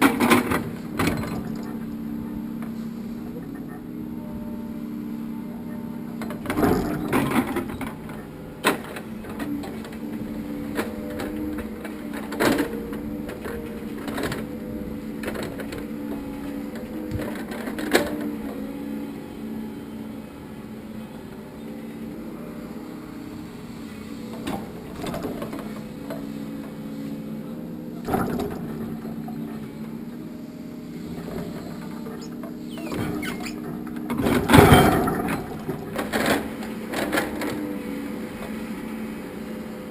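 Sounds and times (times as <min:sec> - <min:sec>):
hydraulic crane humming: 0:00.0 - 0:39.9
logs knocking and clattering: 0:01.0 - 0:01.8.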